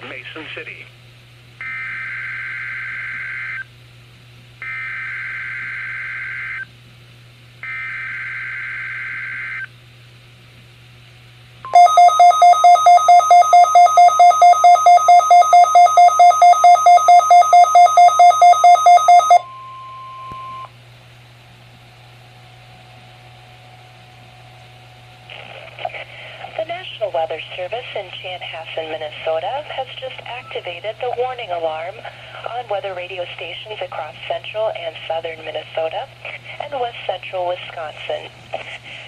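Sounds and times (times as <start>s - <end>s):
steady warning alarm tone: 1.6s - 3.7s, 4.6s - 6.7s, 7.6s - 9.7s, 11.7s - 20.7s
rapid beeping: 11.7s - 20.6s.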